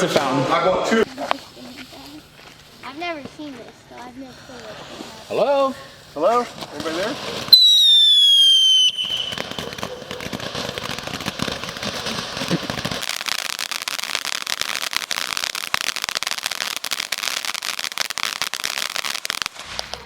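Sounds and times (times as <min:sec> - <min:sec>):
crackling sparks: 0:01.0 - 0:20.0
firework whistle: 0:07.4 - 0:12.7.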